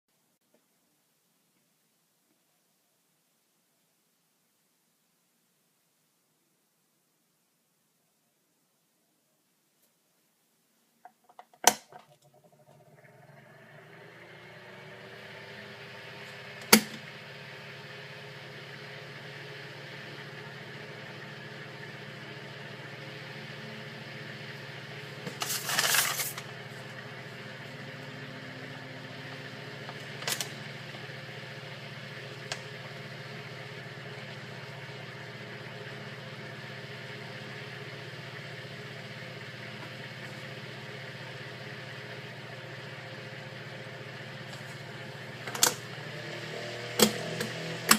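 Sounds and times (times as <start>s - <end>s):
electric fan motor humming: 11.7s - 47.9s
brief scraping noise: 25.2s - 26.5s.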